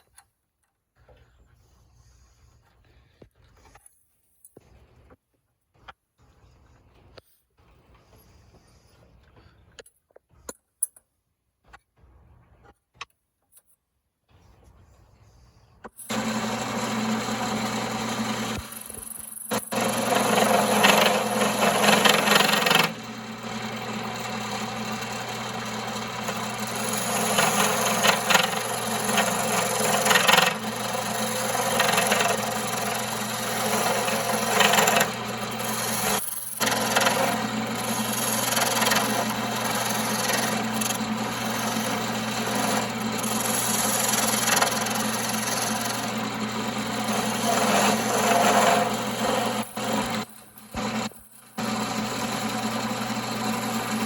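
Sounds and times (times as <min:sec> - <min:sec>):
tool scraping spinning wood: 0:14.6 - 0:54.0
wood lathe motor hum: 0:16.0 - 0:54.0.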